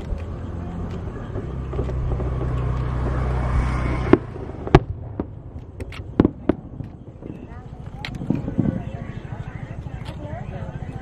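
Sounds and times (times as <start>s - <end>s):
low motor rumble: 0.0s - 11.0s
firework bangs: 1.0s - 9.0s.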